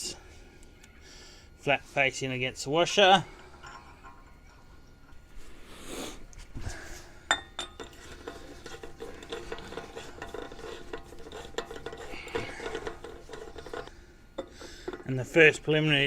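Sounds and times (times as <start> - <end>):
metal nut clinking on axle: 7.3 - 15.1.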